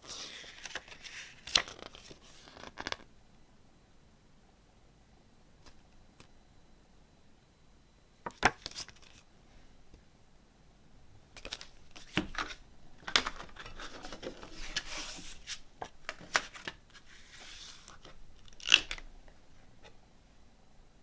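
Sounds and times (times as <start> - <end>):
paper and plastic rustling: 0.0 - 3.0, 11.4 - 19.0.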